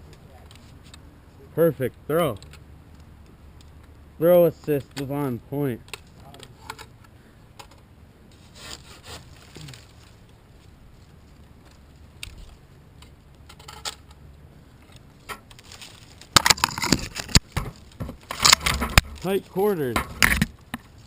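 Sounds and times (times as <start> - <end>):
handsaw cutting a branch: 8.4 - 9.6.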